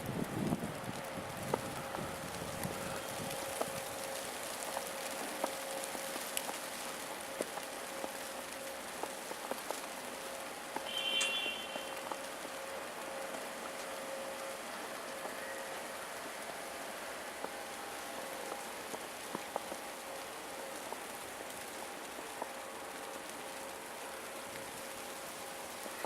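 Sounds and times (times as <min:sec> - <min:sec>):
falling snow hiss: 0:00.0 - 0:26.0
brief high-pitched tone: 0:10.9 - 0:12.0.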